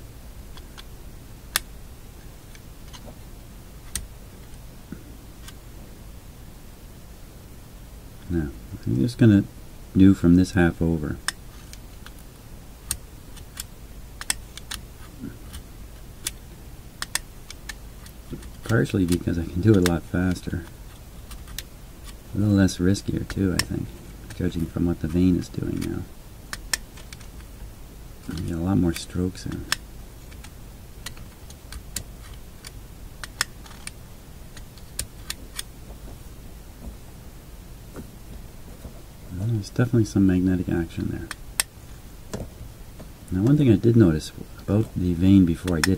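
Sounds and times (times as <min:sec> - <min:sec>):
magnet clicking against magnet: 0:12.8 - 0:14.8, 0:17.0 - 0:22.2, 0:26.5 - 0:27.5, 0:28.2 - 0:35.7
sharp clicks and taps: 0:28.2 - 0:34.0.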